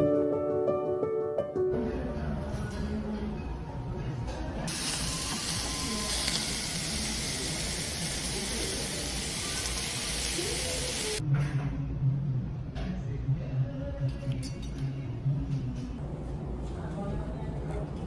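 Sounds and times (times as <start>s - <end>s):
heavy rain pouring: 4.7s - 11.2s.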